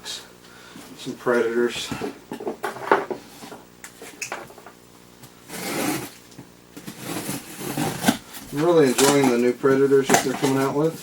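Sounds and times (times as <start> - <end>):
cardboard box rubbing and sliding: 5.5 - 6.2, 6.8 - 9.2.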